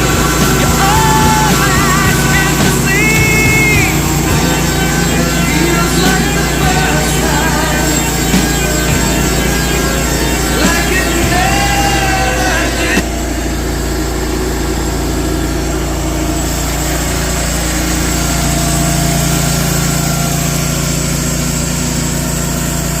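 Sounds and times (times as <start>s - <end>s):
background music: 0.0s - 13.3s
sawmill engine running: 0.0s - 23.0s.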